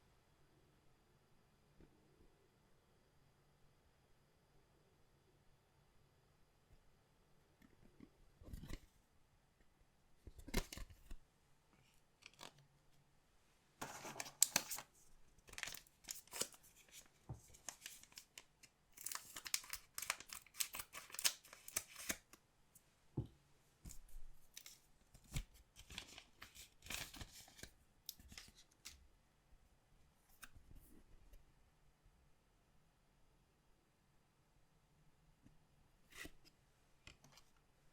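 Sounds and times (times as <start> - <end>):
foil wrappers tearing: 19.0 - 22.2.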